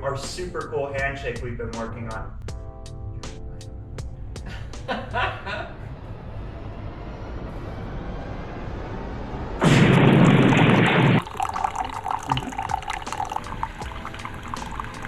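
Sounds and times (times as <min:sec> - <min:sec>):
loud explosion-like burst: 0:09.6 - 0:11.2.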